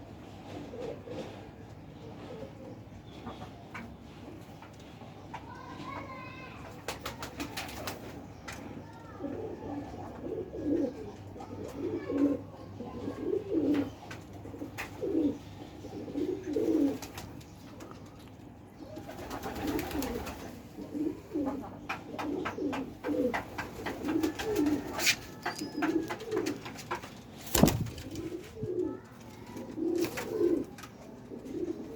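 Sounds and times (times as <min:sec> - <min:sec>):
pigeons cooing: 0:00.4 - 0:03.0, 0:09.0 - 0:17.9, 0:18.8 - 0:31.9.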